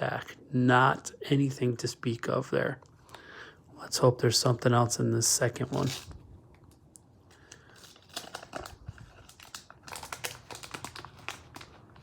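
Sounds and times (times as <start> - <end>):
wax paper wrapper crinkling: 5.6 - 12.0.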